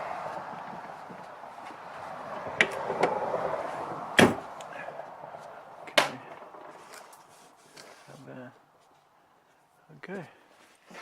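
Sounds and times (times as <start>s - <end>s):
sharp knock: 4.2s - 4.5s
rustling handling noise: 6.2s - 11.0s.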